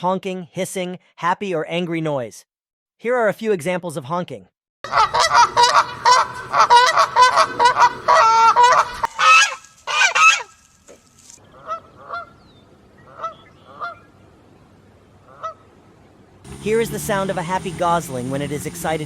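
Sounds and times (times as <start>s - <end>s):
geese honking: 4.8s - 10.7s, 11.5s - 12.4s, 13.0s - 14.1s, 15.2s - 15.7s.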